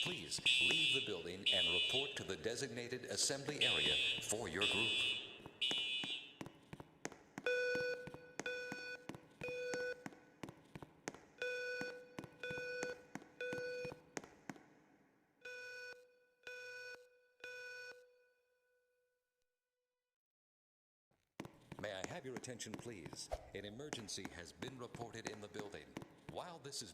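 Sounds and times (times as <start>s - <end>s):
fire alarm beeps: 0.0s - 2.6s, 3.2s - 6.4s, 7.4s - 10.0s, 11.4s - 14.2s, 15.4s - 18.3s.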